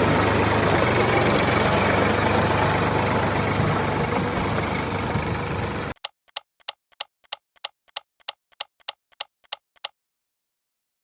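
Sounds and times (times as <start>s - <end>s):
small engine running: 0.0s - 9.9s
sharp even ticks: 6.0s - 10.0s.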